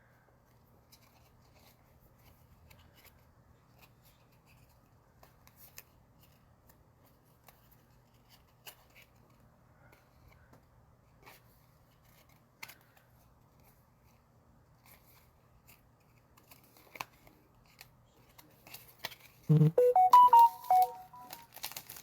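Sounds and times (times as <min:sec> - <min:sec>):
short electronic jingle: 0:19.5 - 0:21.3.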